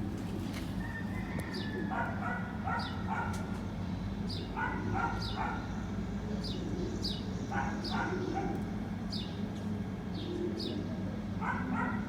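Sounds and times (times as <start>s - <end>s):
small dog yipping: 11.4s - 12.0s.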